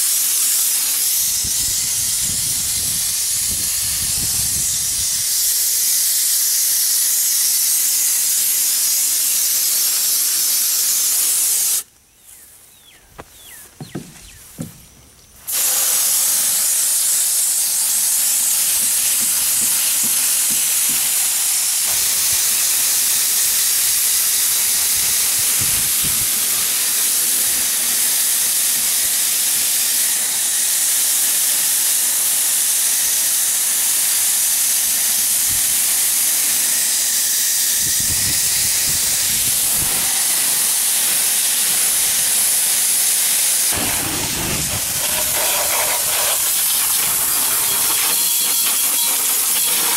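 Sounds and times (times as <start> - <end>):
hose nozzle spraying water: 0.0 - 11.9, 13.8 - 49.9.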